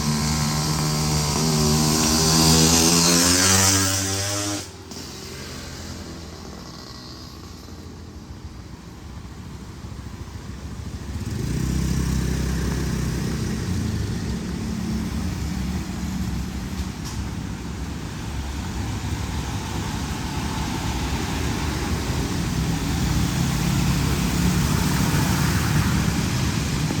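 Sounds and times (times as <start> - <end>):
vehicle engine: 0.0 - 27.0
steady rain: 17.6 - 27.0.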